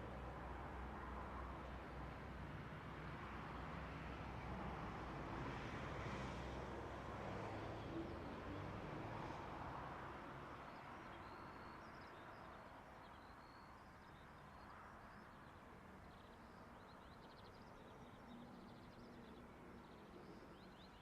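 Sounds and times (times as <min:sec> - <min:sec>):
small birds chirping faintly: 0:10.6 - 0:21.0.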